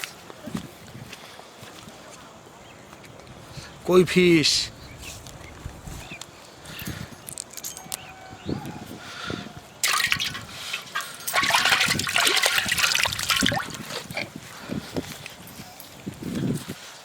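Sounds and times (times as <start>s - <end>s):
water dripping: 9.8s - 14.3s
water splashing: 9.8s - 14.3s.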